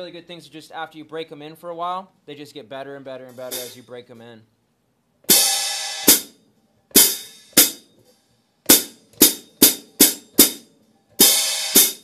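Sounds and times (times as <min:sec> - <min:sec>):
hi-hat strikes with stick: 0:03.3 - 0:04.3, 0:05.3 - 0:12.0.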